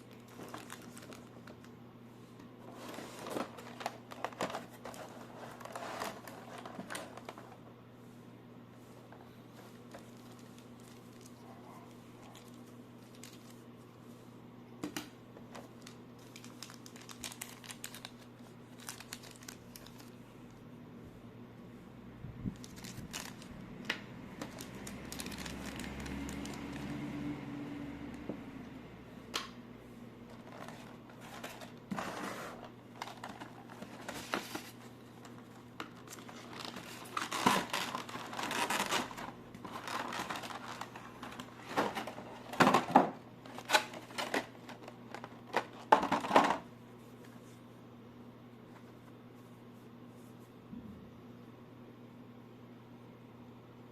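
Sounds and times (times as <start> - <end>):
plastic and paper crinkling: 0.0 - 7.7, 9.0 - 13.9, 15.4 - 20.6, 22.5 - 27.1, 30.2 - 47.6.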